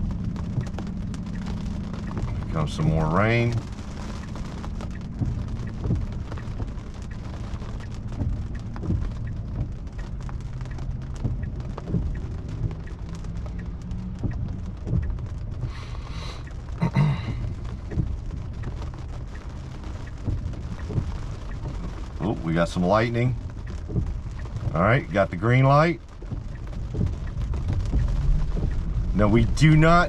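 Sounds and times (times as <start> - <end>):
rain on car roof: 0.0 - 30.0
steady low hum: 0.0 - 30.0.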